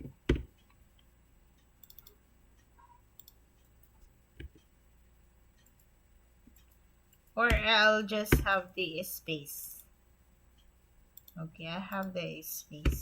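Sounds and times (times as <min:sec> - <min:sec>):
computer mouse clicks: 0:00.0 - 0:04.7, 0:05.6 - 0:07.6, 0:10.6 - 0:12.1
keyboard clicks: 0:01.8 - 0:02.2, 0:03.2 - 0:04.7, 0:11.2 - 0:12.1.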